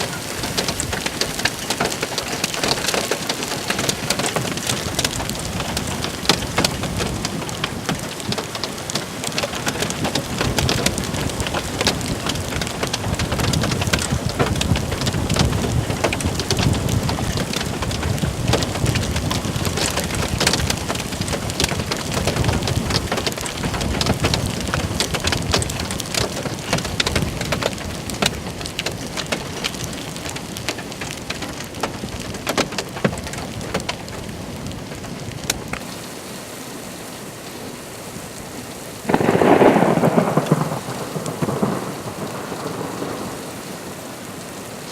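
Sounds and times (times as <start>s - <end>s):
heavy rain pattering: 0.0s - 44.9s
low rumble of thunder: 9.6s - 30.6s, 39.1s - 44.0s.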